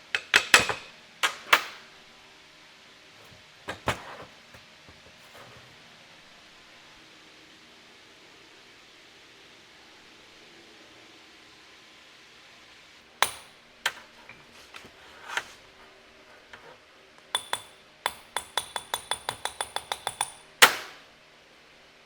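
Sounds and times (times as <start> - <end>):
hammer striking metal: 13.2 - 14.1, 17.4 - 21.0.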